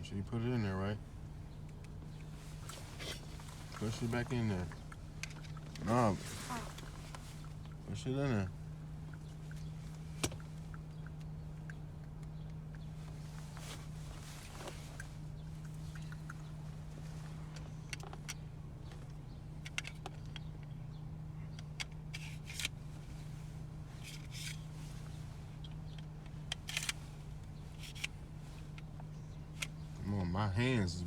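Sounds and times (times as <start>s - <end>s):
steady low hum: 0.0s - 31.0s
pistol parts clicking and scraping: 19.1s - 20.8s, 21.5s - 23.2s, 24.0s - 24.7s, 25.6s - 29.8s.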